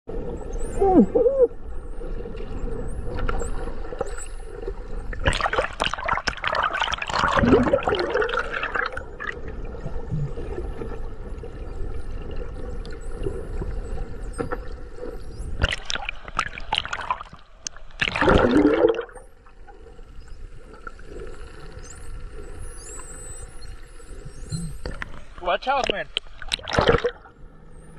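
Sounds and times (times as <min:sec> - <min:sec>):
whale blowing: 0:00.6 - 0:01.7
water sloshing: 0:24.9 - 0:27.4.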